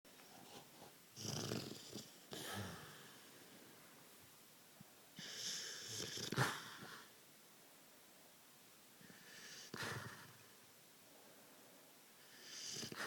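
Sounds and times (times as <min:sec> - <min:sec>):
dog snoring: 0:01.2 - 0:03.2, 0:05.2 - 0:07.1, 0:12.2 - 0:13.0.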